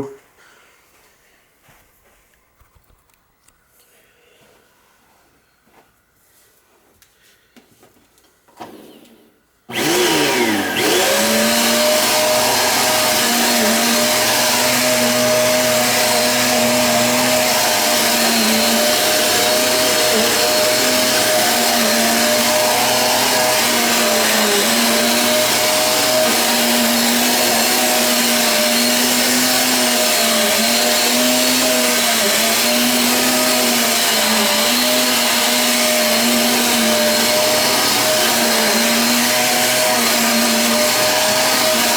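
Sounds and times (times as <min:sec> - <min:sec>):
vacuum cleaner motor whine: 0:08.6 - 0:41.9.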